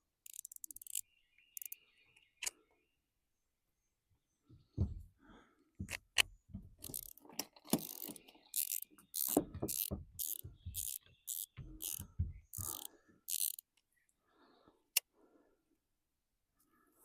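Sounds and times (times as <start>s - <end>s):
fishing reel ratcheting: 0.2s - 1.0s, 1.6s - 1.8s, 6.8s - 13.7s
handling knocks: 4.7s - 5.1s, 9.3s - 12.7s.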